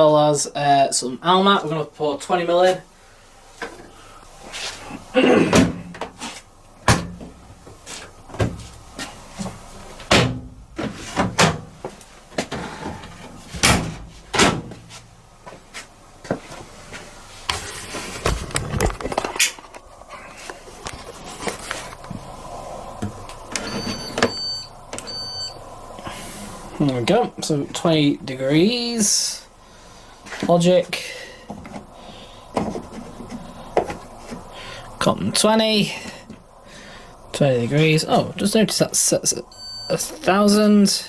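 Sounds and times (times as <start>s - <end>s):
washing machine doors and drawers thumping: 5.4s - 6.2s, 6.8s - 7.4s, 8.3s - 8.7s, 10.0s - 11.8s, 12.4s - 15.0s
control panel beeps: 23.6s - 25.6s, 39.5s - 40.2s.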